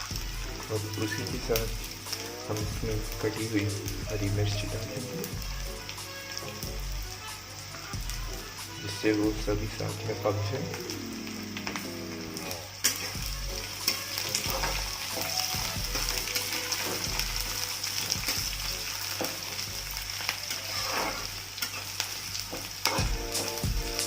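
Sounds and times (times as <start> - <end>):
vegetables sizzling in hot oil: 0.0 - 24.0
utensil scraping a pan: 12.8 - 17.4, 20.2 - 23.1.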